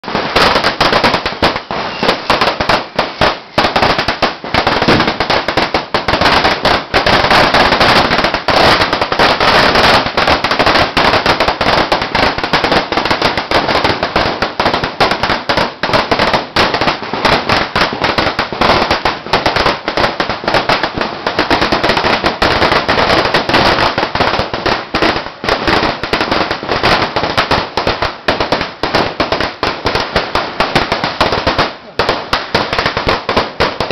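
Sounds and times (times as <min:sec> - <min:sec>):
string firecracker rattling bangs: 0:00.0 - 0:24.9.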